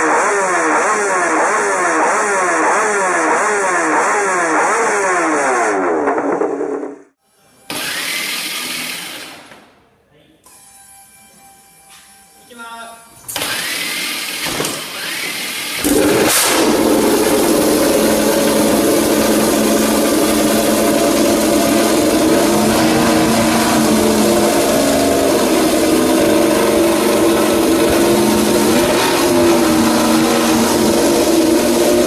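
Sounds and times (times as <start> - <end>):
racing motorcycle engine running: 0.0 - 7.2, 15.0 - 32.0.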